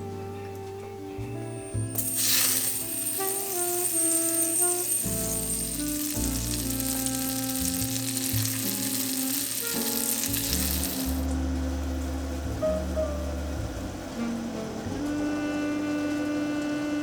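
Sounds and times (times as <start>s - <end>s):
background music: 0.0s - 17.0s
meatballs sizzling in a pan: 1.4s - 11.2s.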